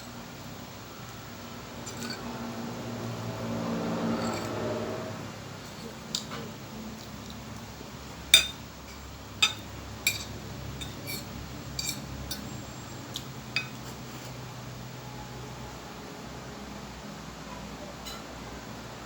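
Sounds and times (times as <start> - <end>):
cutlery clinking on plate: 4.1 - 4.6, 8.3 - 14.0, 18.0 - 18.3.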